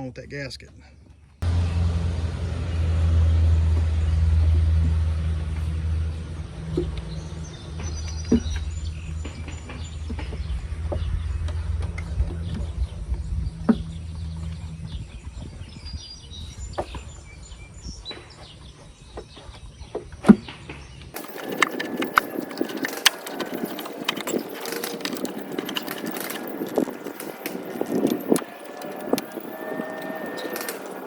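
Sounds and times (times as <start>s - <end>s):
low rumble: 1.4s - 18.1s
clicks and knocks on engine: 21.2s - 31.0s.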